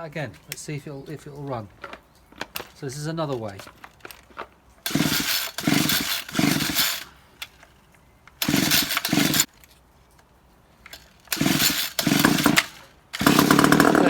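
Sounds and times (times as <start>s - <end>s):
recoil starter pulled: 1.8s - 7.8s, 8.4s - 9.7s, 10.9s - 14.0s
strimmer engine turning over: 4.8s - 7.2s, 8.4s - 9.5s, 11.3s - 14.0s.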